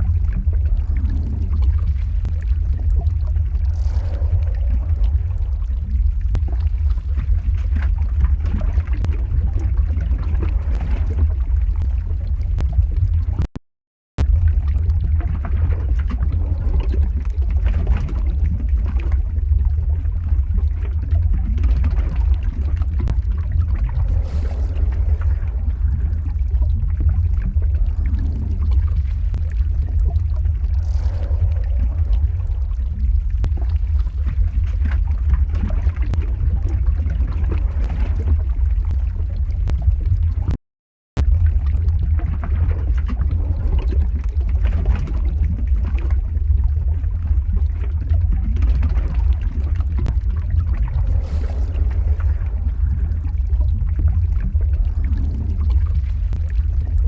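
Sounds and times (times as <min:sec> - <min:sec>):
crackles and pops: 0:00.0 - 0:13.6, 0:14.2 - 0:40.6, 0:41.2 - 0:57.0
deep rumble: 0:00.0 - 0:13.6, 0:14.2 - 0:57.0.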